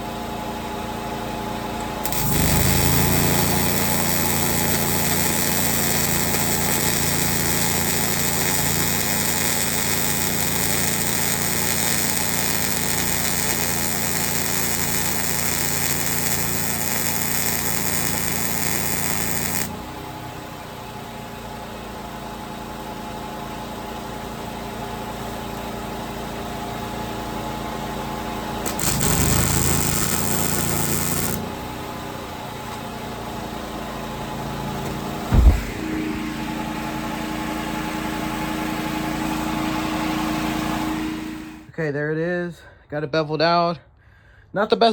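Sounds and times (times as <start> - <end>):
machine hum: 1.6 - 19.8, 28.6 - 41.7
grinder grinding steel: 2.0 - 19.7, 28.7 - 31.5.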